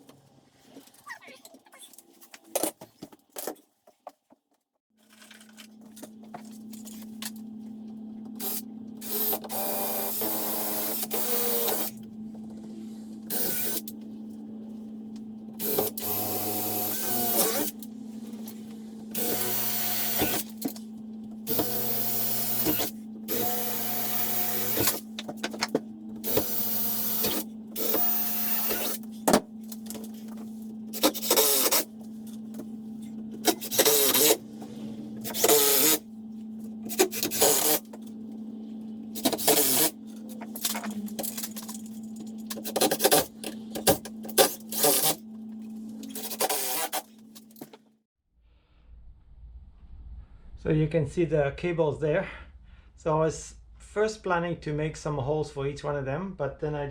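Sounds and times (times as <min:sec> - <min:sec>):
steady hum: 0:05.9 - 0:47.8
power tool cutting wood: 0:08.4 - 0:12.0, 0:13.3 - 0:13.9, 0:15.6 - 0:17.9, 0:19.1 - 0:20.7, 0:21.5 - 0:25.1, 0:26.2 - 0:29.0, 0:31.0 - 0:31.9, 0:33.4 - 0:34.5, 0:35.2 - 0:36.0, 0:36.9 - 0:37.9, 0:39.2 - 0:40.0, 0:46.0 - 0:47.1.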